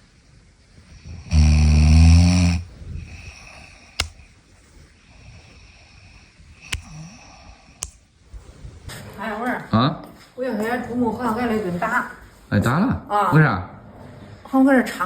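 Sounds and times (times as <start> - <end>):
quiet breathing: 0.0 - 8.9
loud snore: 1.0 - 3.8.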